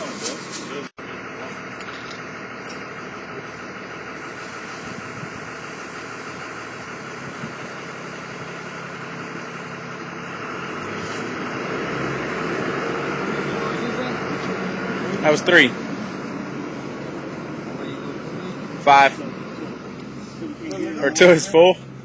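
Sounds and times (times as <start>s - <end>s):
engine hum: 0.0s - 22.0s.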